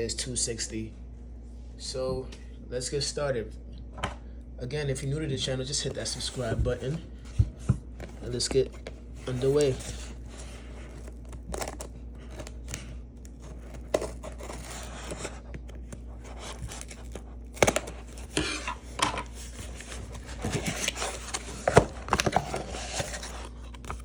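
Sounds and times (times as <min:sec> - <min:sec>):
packaging cutting and tearing: 0:08.1 - 0:24.0.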